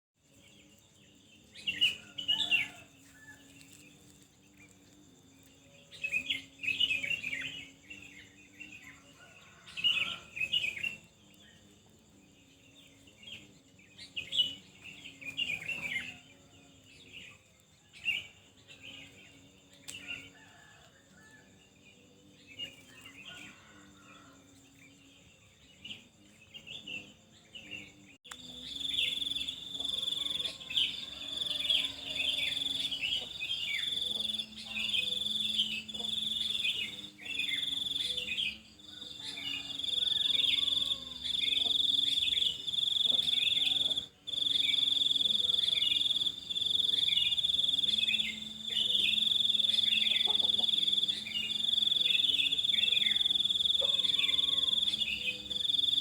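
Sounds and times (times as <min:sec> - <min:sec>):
insect trill: 0:00.2 - 0:56.0
small birds chirping: 0:24.7 - 0:56.0.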